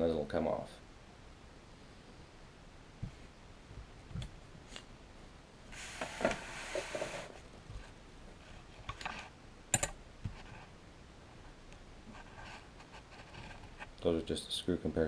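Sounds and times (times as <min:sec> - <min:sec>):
metal parts clicking and tapping: 0:09.7 - 0:10.0
rustling: 0:10.2 - 0:14.1.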